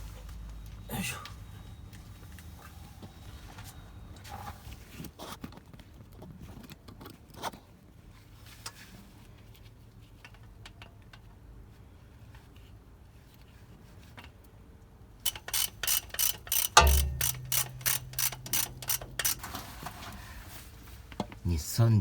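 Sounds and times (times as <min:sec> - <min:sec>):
sharp knock: 0:16.8 - 0:18.6.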